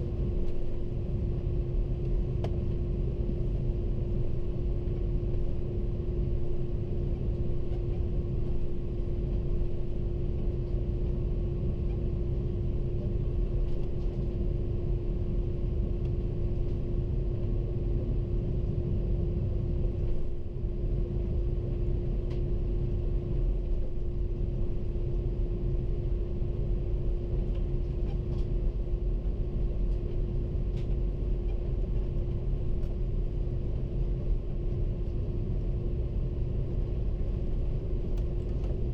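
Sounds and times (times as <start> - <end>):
airliner cabin rumble: 0.0 - 38.9
constant droning hum: 0.0 - 38.9.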